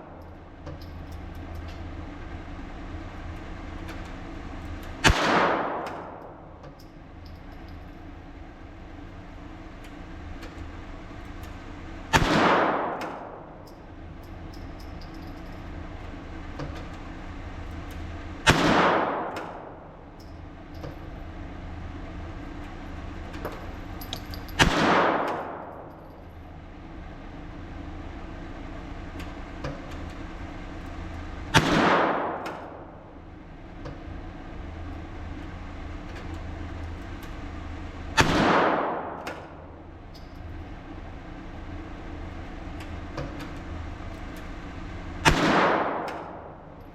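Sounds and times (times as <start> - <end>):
low steady hum: 0.0 - 46.9
gunshots with echo: 5.0 - 6.4, 12.1 - 13.6, 18.5 - 19.8, 24.6 - 25.9, 31.6 - 33.0, 38.2 - 39.6, 45.2 - 46.7.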